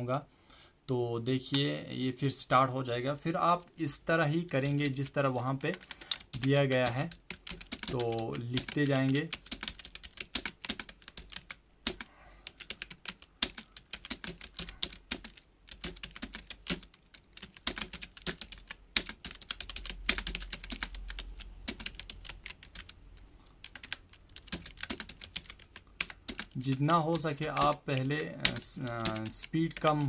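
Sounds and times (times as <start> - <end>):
computer keyboard keys clicking: 5.6 - 23.0, 23.6 - 30.0.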